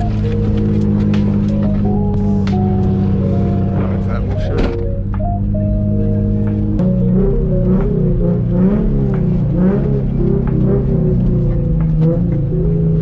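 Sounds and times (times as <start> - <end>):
low car rumble: 0.0 - 13.0
music with low bass notes: 0.0 - 13.0.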